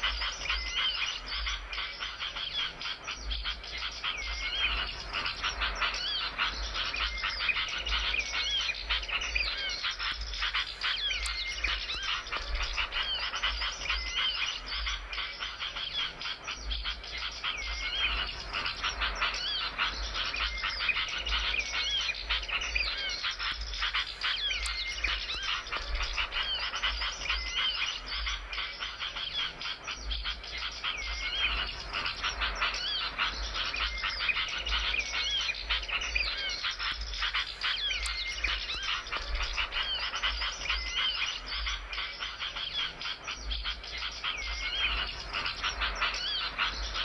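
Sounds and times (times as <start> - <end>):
songbirds chattering: 0.0 - 47.0.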